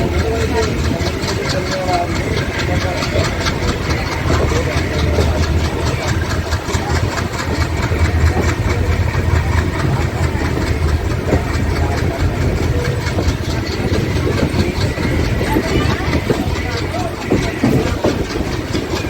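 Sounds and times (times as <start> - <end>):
diesel locomotive engine rumbling: 0.0 - 19.0.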